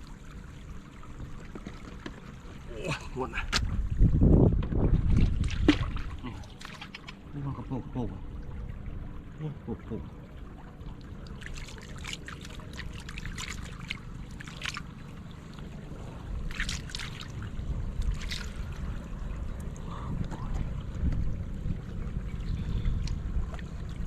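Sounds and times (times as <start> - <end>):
steady low rumble: 0.0 - 24.0
shallow water splashing: 4.8 - 24.0.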